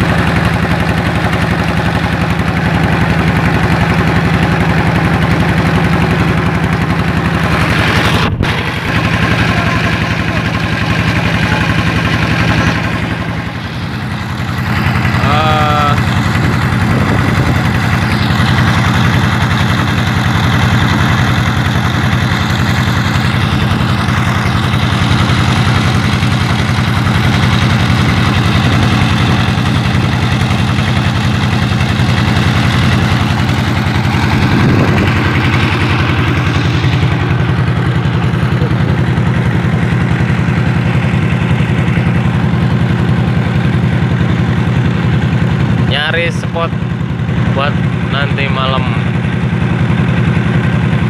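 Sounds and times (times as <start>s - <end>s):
vehicle engine running: 0.0s - 51.0s.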